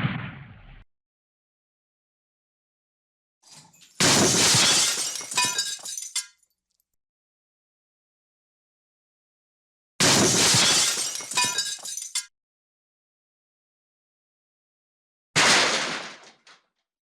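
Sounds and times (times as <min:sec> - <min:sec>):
glass shattering: 0:03.5 - 0:06.4, 0:10.0 - 0:12.3, 0:15.4 - 0:16.5
glass shards chinking: 0:04.7 - 0:06.4, 0:10.8 - 0:12.3.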